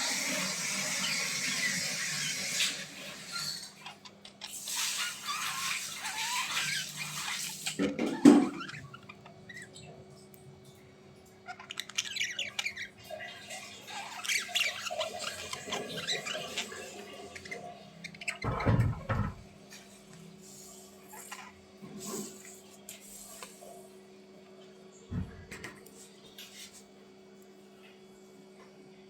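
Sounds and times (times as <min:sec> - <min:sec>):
bird chirping and squawking: 0:00.8 - 0:09.9, 0:11.4 - 0:18.8.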